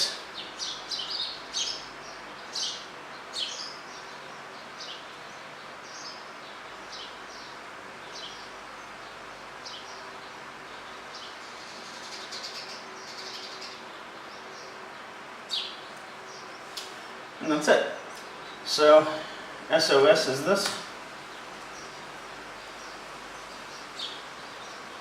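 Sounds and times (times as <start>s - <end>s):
birds chirping: 0.0s - 25.0s
steady background hiss: 0.0s - 25.0s.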